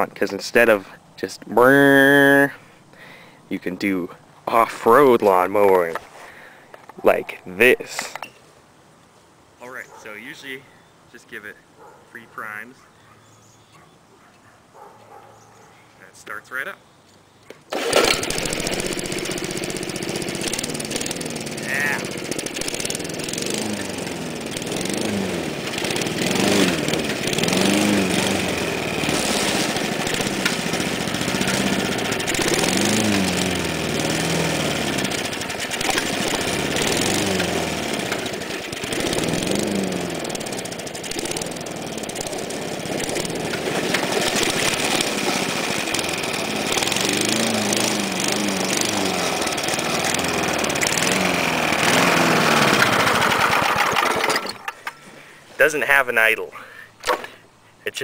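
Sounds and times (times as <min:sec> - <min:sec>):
lawnmower engine revving: 0:01.6 - 0:02.5, 0:04.5 - 0:06.0, 0:17.7 - 0:55.0.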